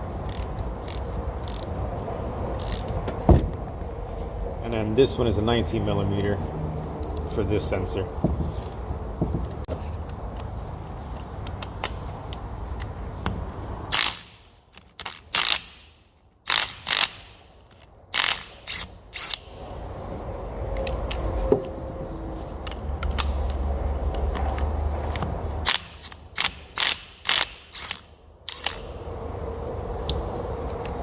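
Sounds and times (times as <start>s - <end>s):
ratchet clicking: 0.2s - 1.7s, 2.6s - 2.9s, 13.9s - 19.5s, 25.1s - 28.9s.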